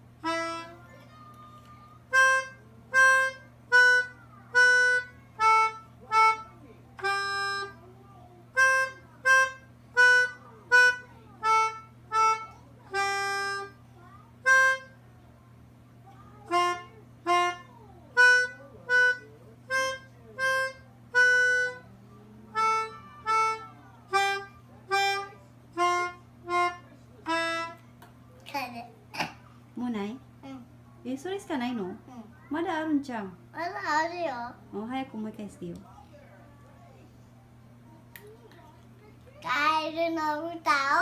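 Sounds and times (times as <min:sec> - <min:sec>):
harmonica playing slow melody: 0:00.2 - 0:00.8, 0:02.1 - 0:07.8, 0:08.6 - 0:13.8, 0:18.2 - 0:21.8, 0:22.5 - 0:27.8.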